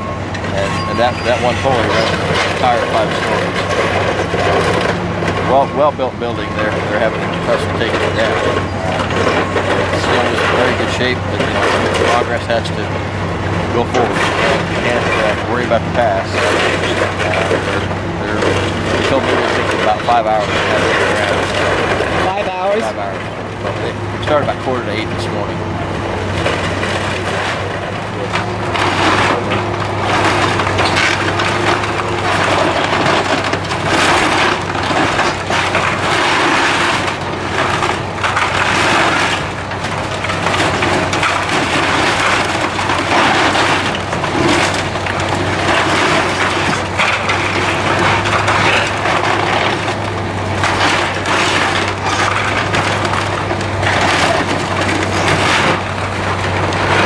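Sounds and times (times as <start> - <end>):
demolition machine engine running: 0.0 - 57.0
wooden timbers cracking and crashing: 0.0 - 57.0.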